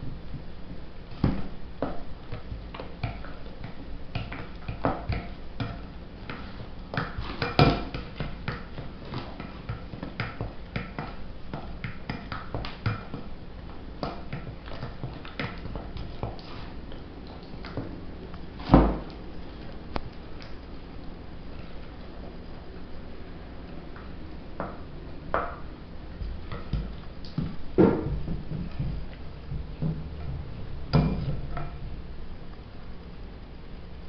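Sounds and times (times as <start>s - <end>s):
spoon stirring in bowl: 2.0s - 13.3s.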